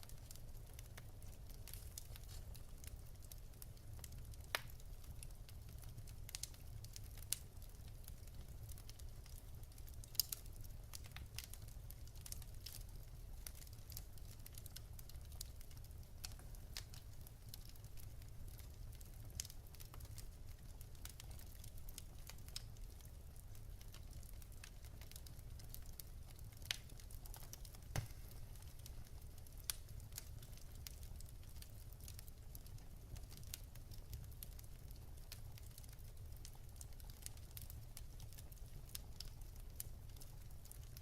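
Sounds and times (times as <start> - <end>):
low fire rumble: 0.0 - 41.0
wood fire crackling: 0.0 - 41.0
sharp fire pops: 26.6 - 28.9.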